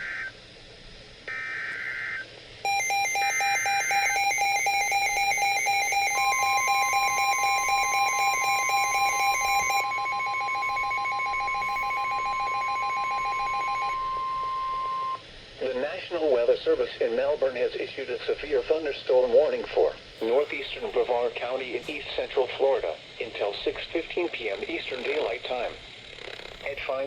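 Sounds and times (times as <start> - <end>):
long steady warning tone: 1.2 - 15.9
rapid pulsing alarm beep: 1.3 - 15.2
buzzy digital data bursts: 20.2 - 27.0.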